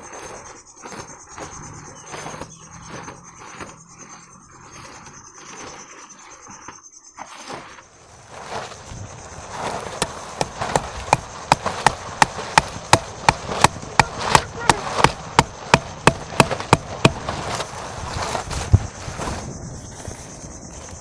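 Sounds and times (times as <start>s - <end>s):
sharp knocks on wood: 10.0s - 17.2s.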